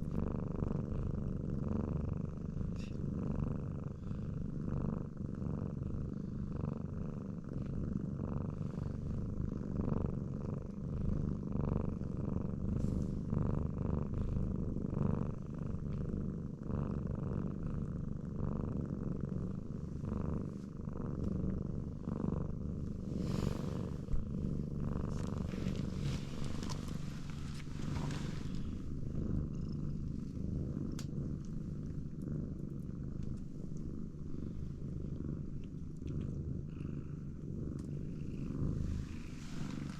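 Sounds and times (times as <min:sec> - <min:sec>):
cat purring: 0:00.0 - 0:39.9
rustling noises: 0:22.8 - 0:31.4, 0:38.4 - 0:39.9.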